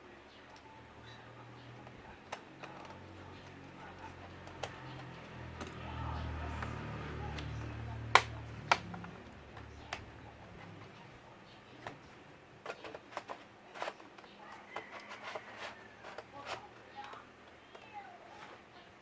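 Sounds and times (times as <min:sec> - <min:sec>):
laptop handling clicks and taps: 0:01.8 - 0:10.3.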